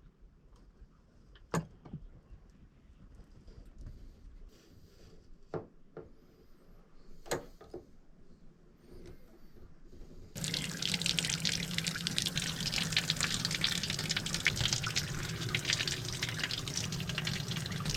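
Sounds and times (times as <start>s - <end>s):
tap water splashing into bathtub: 10.4s - 17.9s.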